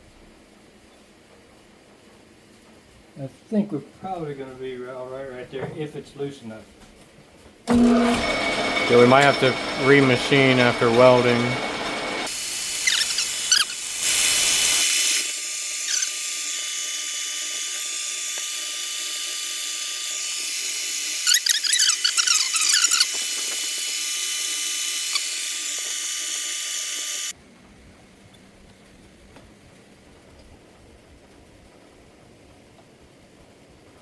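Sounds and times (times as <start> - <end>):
metal lathe whirring: 7.7 - 14.0
high squeals from cutting: 12.8 - 13.8, 15.8 - 16.2, 21.2 - 23.2.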